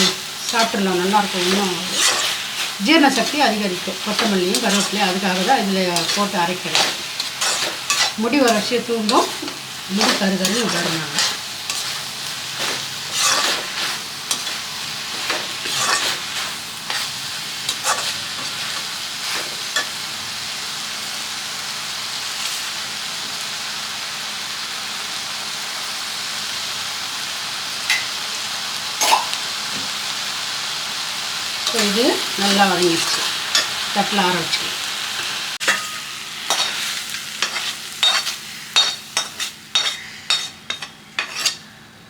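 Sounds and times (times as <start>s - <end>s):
spatula scraping pan: 0.0s - 19.9s, 35.6s - 41.6s
vegetables sizzling in oil: 0.0s - 41.8s.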